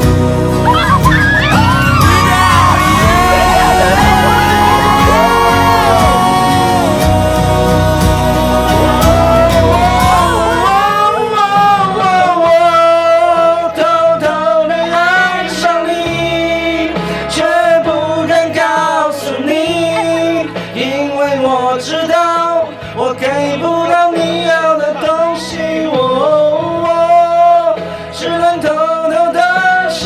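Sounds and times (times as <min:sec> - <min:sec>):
instrumental backing: 0:00.0 - 0:14.0
song with sung voice: 0:00.0 - 0:30.0.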